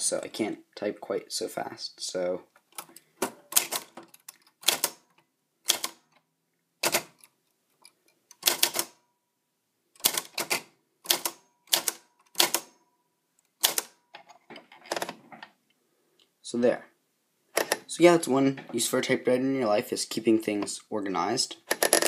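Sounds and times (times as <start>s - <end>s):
manual typewriter clacks: 2.8s - 6.2s, 6.8s - 7.3s, 8.3s - 9.0s, 10.0s - 12.8s, 13.6s - 14.0s, 17.6s - 17.9s, 21.7s - 22.0s.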